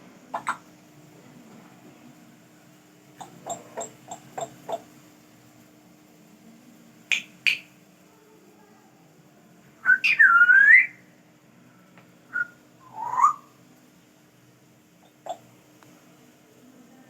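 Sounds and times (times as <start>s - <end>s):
parrot clicks: 7.1s - 7.7s
parrot chirp and rising call: 9.8s - 11.0s, 12.4s - 13.5s
parrot whistle: 9.8s - 11.0s, 12.3s - 13.5s.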